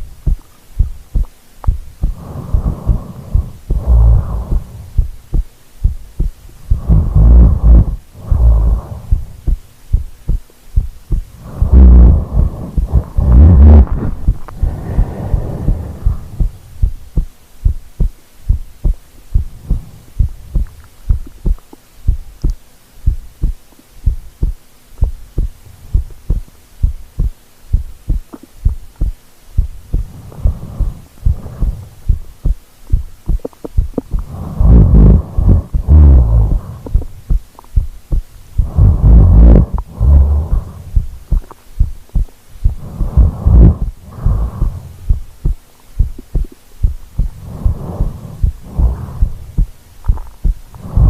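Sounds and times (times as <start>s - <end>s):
heartbeat thumping: 0.0s - 51.0s
snoring breaths: 2.0s - 5.1s, 6.6s - 9.6s, 11.1s - 16.9s, 19.4s - 21.6s, 29.9s - 32.3s, 34.0s - 37.4s, 38.6s - 41.9s, 42.6s - 45.3s, 46.0s - 51.0s.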